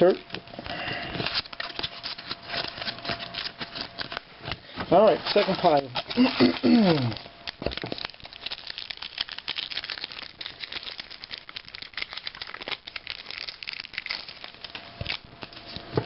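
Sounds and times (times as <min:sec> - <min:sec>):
card pack wrapper crinkling: 0:00.0 - 0:15.9.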